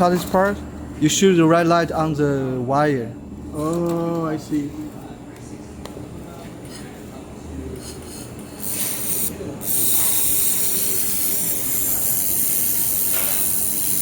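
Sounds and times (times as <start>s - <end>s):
welding gun hissing: 8.6s - 14.0s.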